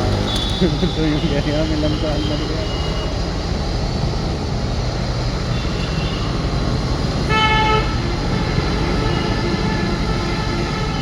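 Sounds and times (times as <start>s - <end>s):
road traffic rumble: 0.0s - 11.0s
vehicle horn honking: 0.1s - 3.2s, 7.3s - 11.0s.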